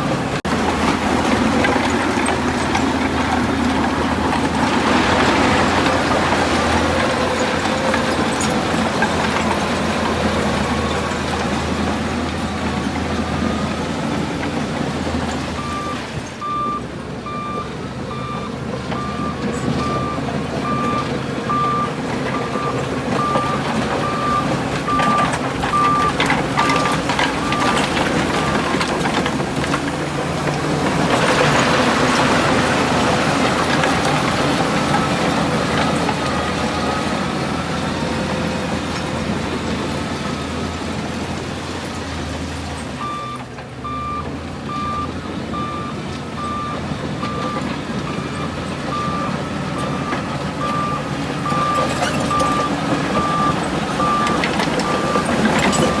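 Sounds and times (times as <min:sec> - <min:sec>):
heavy diesel machinery running: 0:00.0 - 0:56.0
reversing alarm beeping: 0:15.4 - 0:28.9, 0:43.0 - 0:56.0.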